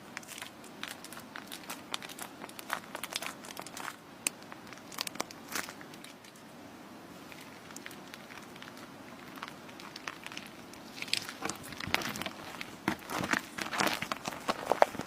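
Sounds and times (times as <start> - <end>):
slime crackling and clicking: 0.2 - 6.3.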